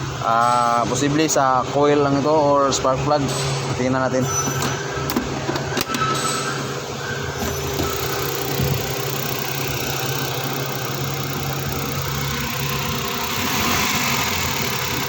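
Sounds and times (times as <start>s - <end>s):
engine idling unevenly misfiring: 7.4s - 15.0s.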